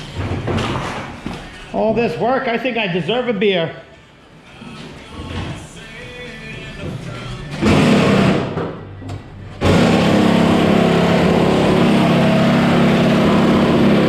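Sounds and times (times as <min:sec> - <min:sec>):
loud burst of noise: 0:07.6 - 0:08.6, 0:09.6 - 0:14.0.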